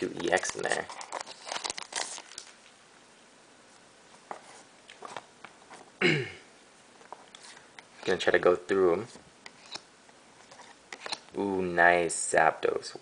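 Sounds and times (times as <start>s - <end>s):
foil pack crinkling: 0.0s - 2.7s.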